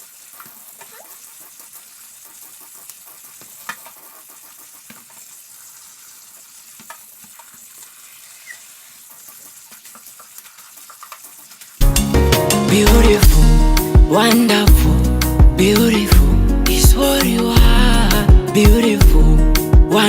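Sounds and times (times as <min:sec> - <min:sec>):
water hissing through a sieve: 0:00.0 - 0:11.8.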